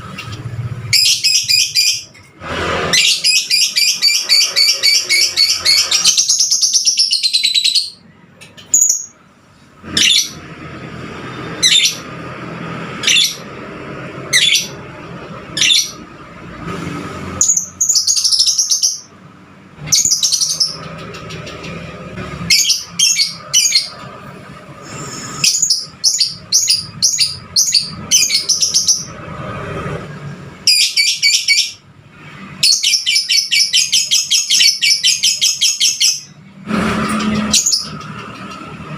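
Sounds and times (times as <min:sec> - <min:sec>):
lovebird chirping: 0:03.0 - 0:09.2, 0:17.4 - 0:19.1, 0:19.8 - 0:21.8.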